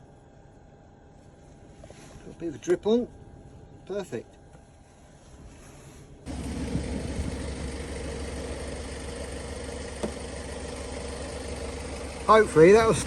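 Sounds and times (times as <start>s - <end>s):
vehicle engine idling: 6.3s - 13.0s.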